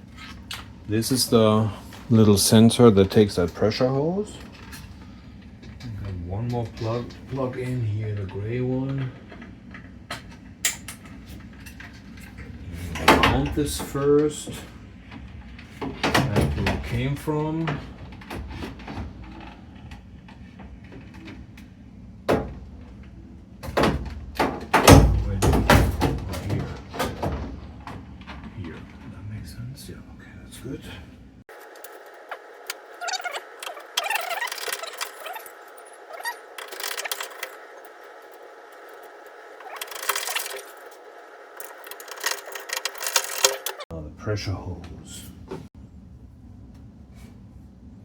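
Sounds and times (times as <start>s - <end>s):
hands handling plastic parts: 31.6s - 43.8s.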